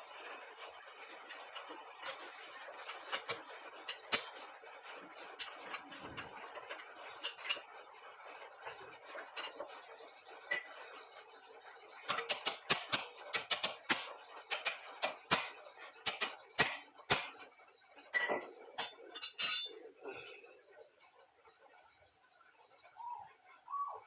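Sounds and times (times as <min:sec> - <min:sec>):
metal tools clinking: 0:18.2 - 0:19.8.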